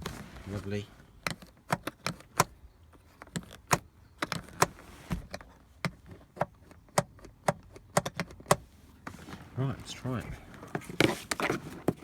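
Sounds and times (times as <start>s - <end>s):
clicks and taps of car seat latch: 1.2s - 2.6s, 3.2s - 8.6s.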